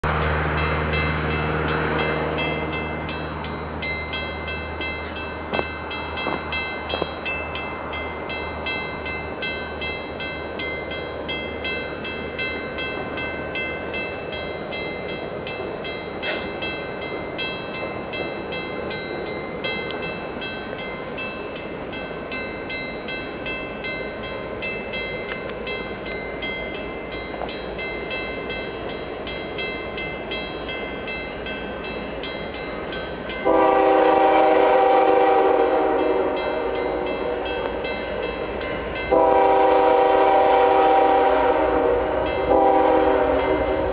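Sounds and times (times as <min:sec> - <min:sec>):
locomotive low rumble: 0:00.0 - 0:22.3.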